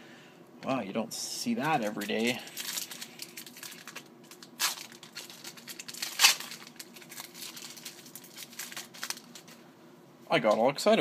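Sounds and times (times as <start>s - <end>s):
foil wrapper crinkling: 1.6s - 9.6s.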